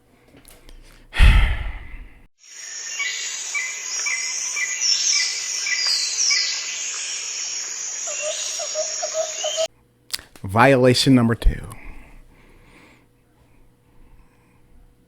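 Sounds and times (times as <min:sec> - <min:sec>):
loud sudden hit: 0:01.2 - 0:02.0
steady hiss: 0:02.4 - 0:09.6
crickets chirping: 0:02.4 - 0:09.7
birds chirping: 0:02.6 - 0:09.7.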